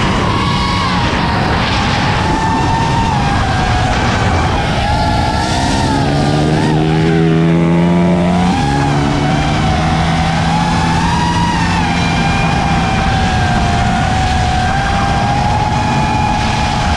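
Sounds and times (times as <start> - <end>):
small motorbike engines running: 0.0 - 16.9
wavering whine: 0.0 - 16.9.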